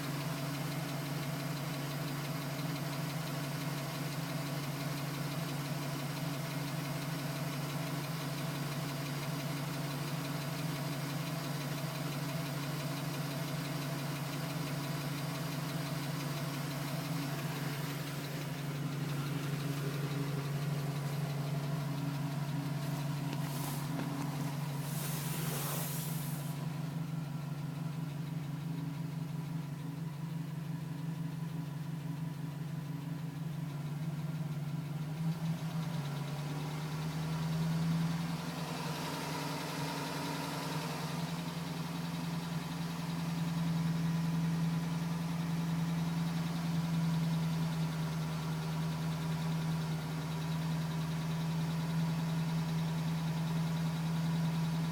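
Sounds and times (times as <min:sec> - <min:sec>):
engine idling with tapping: 0:00.0 - 0:54.9
short hisses: 0:22.8 - 0:26.6.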